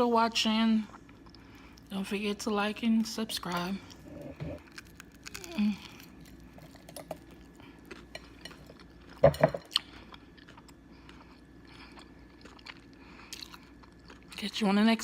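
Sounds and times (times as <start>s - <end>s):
person chewing crunchy food: 3.5s - 14.4s.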